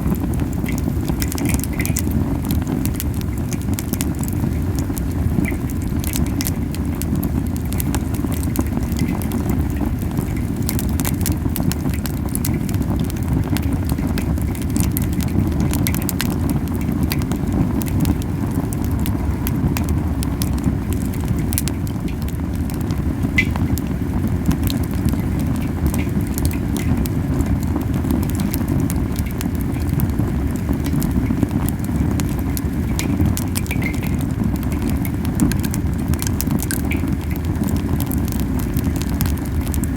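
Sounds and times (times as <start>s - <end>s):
campfire flames rumbling: 0.0s - 39.9s
wood popping and crackling: 0.0s - 39.9s.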